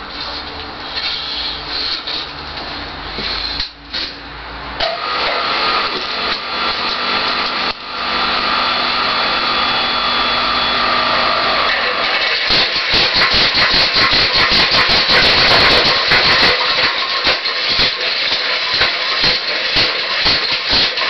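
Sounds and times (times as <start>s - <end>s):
power hammer motor whining: 4.9s - 12.0s.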